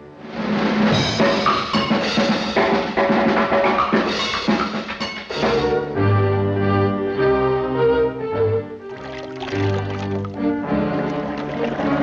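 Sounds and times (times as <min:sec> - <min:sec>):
orchestral cartoon music: 0:05.3 - 0:12.0.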